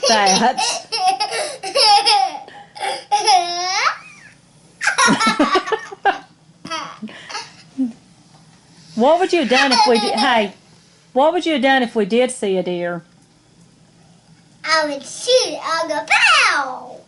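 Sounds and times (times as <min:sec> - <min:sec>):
girl giggling: 0:00.0 - 0:08.0, 0:09.5 - 0:10.5.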